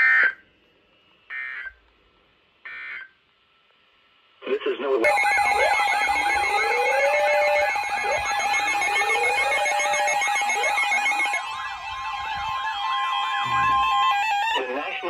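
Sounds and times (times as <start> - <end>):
steady electronic alarm tone: 5.0 - 15.0
warbling siren sweeps: 5.0 - 15.0
slow rising wail: 5.1 - 15.0.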